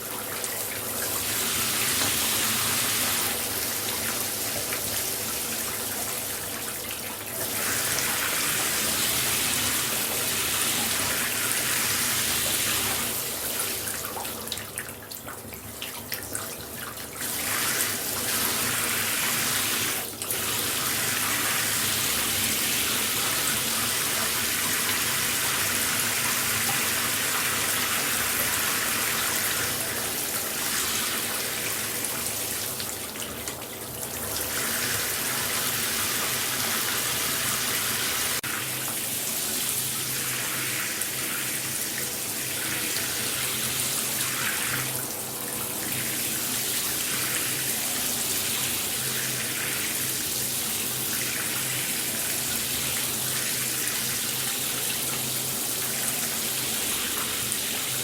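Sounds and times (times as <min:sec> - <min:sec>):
shower spray running: 0:01.0 - 0:05.0, 0:07.4 - 0:13.9, 0:17.2 - 0:32.9, 0:34.4 - 0:45.1.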